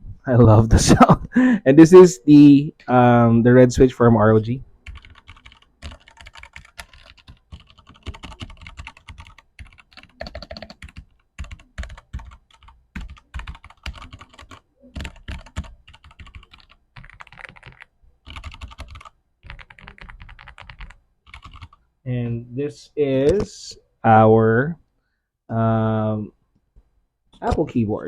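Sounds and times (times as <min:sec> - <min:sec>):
mechanical keyboard typing: 0:04.8 - 0:21.8.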